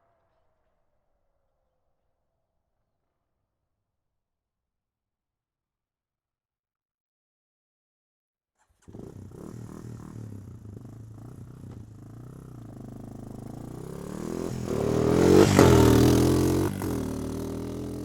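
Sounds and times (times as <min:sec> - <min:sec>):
quad bike engine revving: 0:08.8 - 0:18.0.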